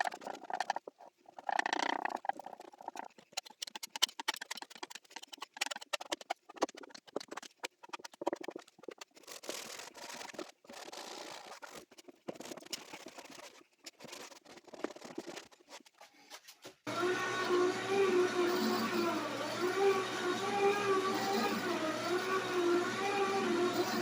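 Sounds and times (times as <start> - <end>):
scratching and rubbing on plywood: 0.0 - 16.8.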